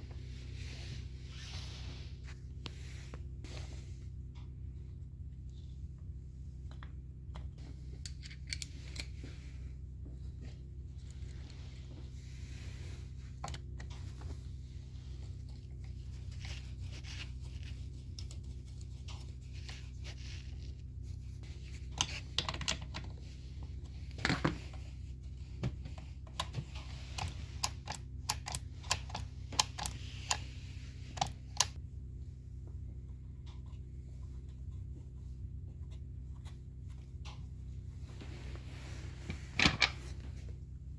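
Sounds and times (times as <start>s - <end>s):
steady low hum: 0.0s - 40.9s
small parts and tools clicking: 8.0s - 9.2s, 26.3s - 30.4s.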